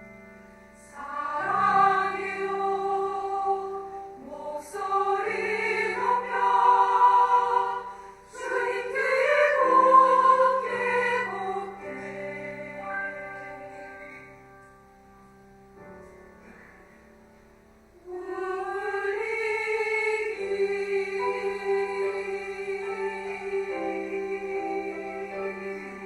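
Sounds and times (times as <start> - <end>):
piano accompaniment: 0.0 - 26.0
women's choir singing a hymn: 0.7 - 14.4, 18.0 - 26.0.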